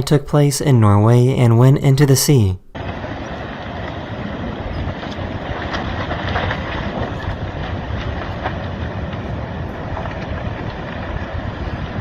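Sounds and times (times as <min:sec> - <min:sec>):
landslide rumble: 0:00.0 - 0:12.0
rocks cracking and clattering: 0:02.8 - 0:12.0.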